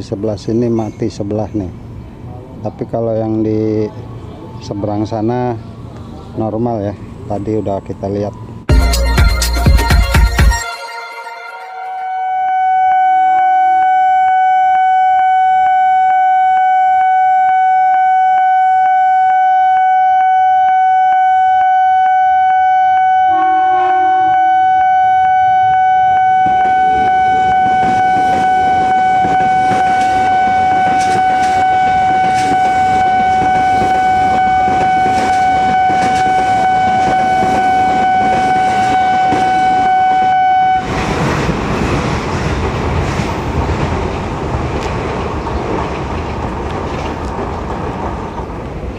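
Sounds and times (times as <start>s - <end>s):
level-crossing warning alarm: 10.6s - 41.3s
electric train passing: 21.4s - 48.9s
train wheel clatter: 26.4s - 39.8s, 40.8s - 48.9s.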